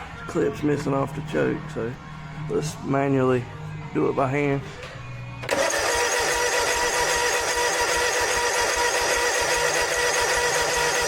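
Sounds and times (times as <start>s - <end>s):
electric starter cranking engine: 5.4s - 11.0s.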